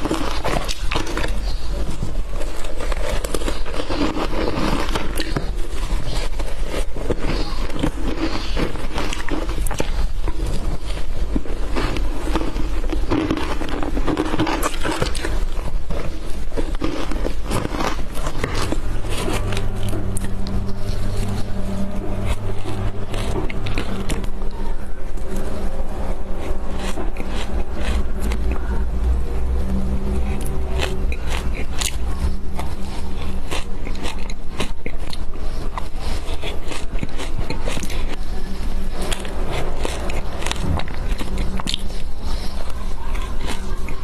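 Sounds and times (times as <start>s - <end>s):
spoon scraping and crunching ice: 0.0s - 44.0s
steady low hum: 0.0s - 44.0s.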